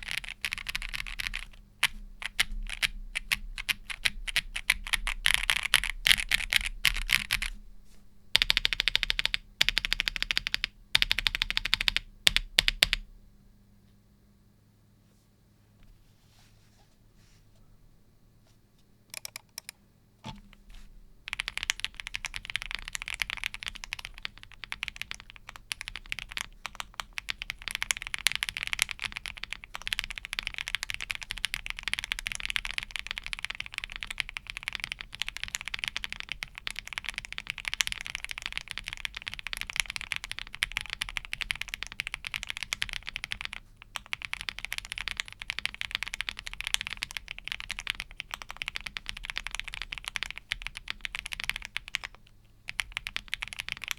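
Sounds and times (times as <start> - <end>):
mechanical keyboard key clacks: 19.1 - 19.7.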